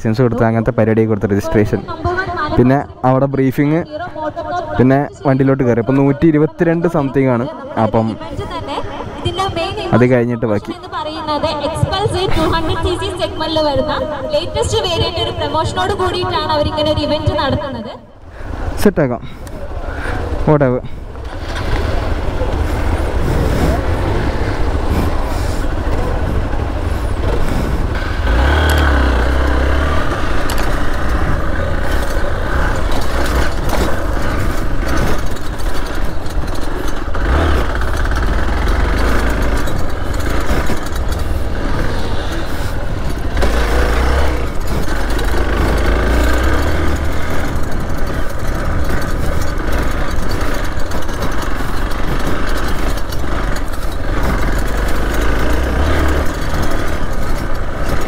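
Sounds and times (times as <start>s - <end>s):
dirt bike engine revving: 19.9s - 58.0s.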